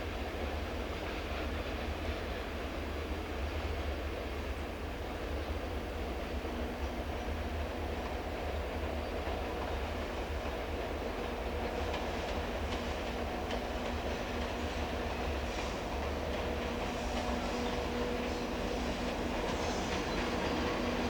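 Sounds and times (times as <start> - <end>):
electric train rumble and hum: 0.0 - 21.0.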